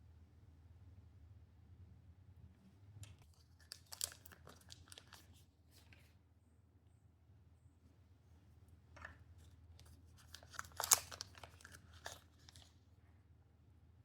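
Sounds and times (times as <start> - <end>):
packaging crinkling and tearing: 3.2 - 5.4, 9.8 - 12.8.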